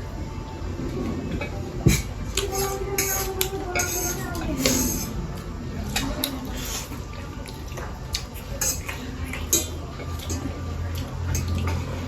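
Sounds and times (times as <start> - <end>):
steady low hum: 0.0 - 12.0
utensils scraping a bowl: 1.4 - 10.5.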